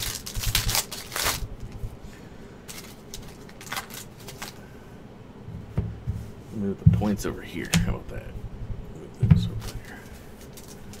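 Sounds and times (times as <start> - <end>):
trading cards rustling and sliding: 2.7 - 4.6, 9.6 - 11.0.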